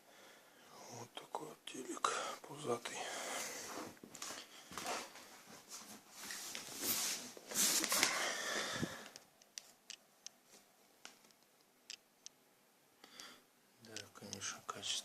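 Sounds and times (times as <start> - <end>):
rustling and scraping handling noise: 3.4 - 9.8.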